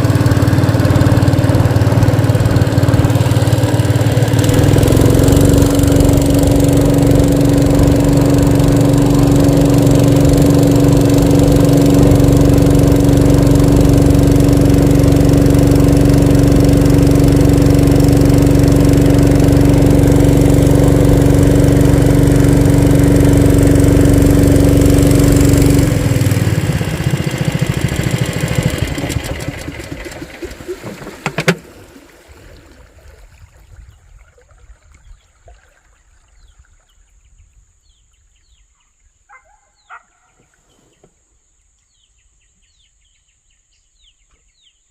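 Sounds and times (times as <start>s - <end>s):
small engine running: 0.0s - 31.7s.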